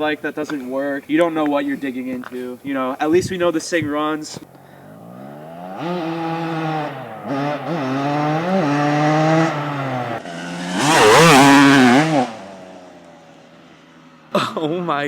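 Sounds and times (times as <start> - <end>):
two-stroke dirt bike revving: 4.2 - 15.0.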